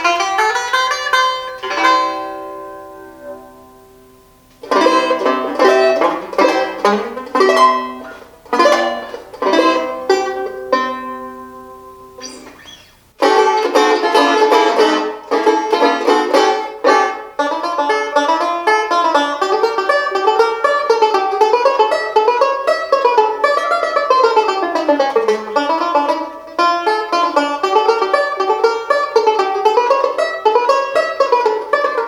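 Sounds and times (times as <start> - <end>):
banjo playing: 0.0 - 32.0.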